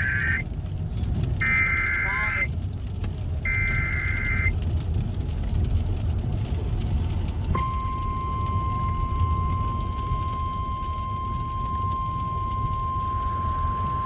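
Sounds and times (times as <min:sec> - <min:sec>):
radio hiss: 0:00.0 - 0:00.4, 0:01.4 - 0:02.5, 0:03.5 - 0:04.5
low hum: 0:00.0 - 0:00.5, 0:01.4 - 0:02.5, 0:03.5 - 0:04.5, 0:07.1 - 0:14.0
warbling digital data burst: 0:01.4 - 0:02.5.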